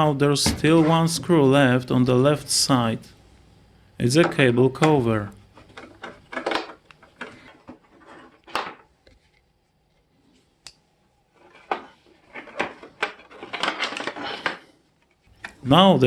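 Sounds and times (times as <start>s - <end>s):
plastic parts clattering: 4.2s - 8.9s, 11.4s - 15.9s.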